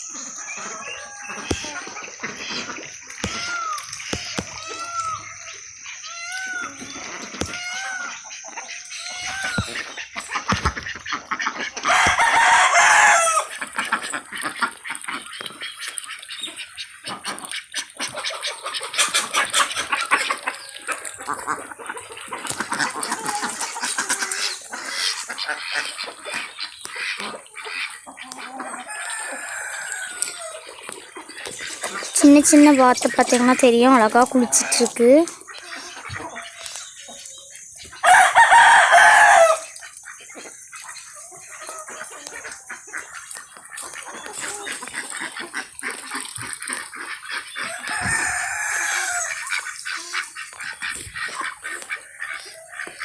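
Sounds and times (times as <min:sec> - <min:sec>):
ducks quacking: 0:00.1 - 0:53.0
water splashing: 0:00.4 - 0:36.2, 0:41.9 - 0:53.0
chicken clucking: 0:06.6 - 0:53.0
rooster crowing: 0:11.9 - 0:13.5, 0:28.7 - 0:30.6, 0:38.0 - 0:39.7, 0:47.7 - 0:49.4.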